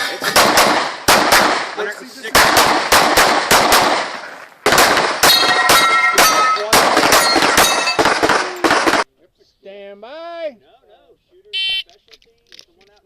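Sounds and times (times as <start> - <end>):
pistol shots: 0.2 - 9.1
steel targets ringing: 5.2 - 8.2.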